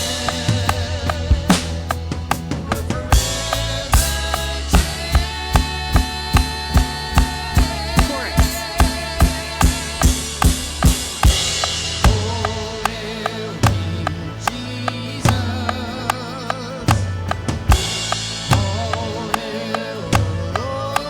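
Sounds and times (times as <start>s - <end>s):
drum kit beat: 0.0s - 21.0s
worship band music: 0.0s - 21.0s.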